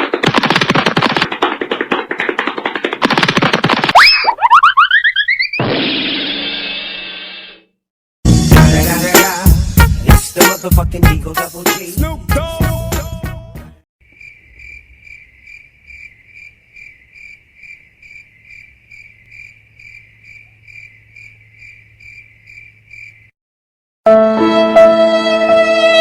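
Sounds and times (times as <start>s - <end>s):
music clip: 8.3s - 13.8s, 24.1s - 26.0s
cricket chirping: 14.0s - 23.3s.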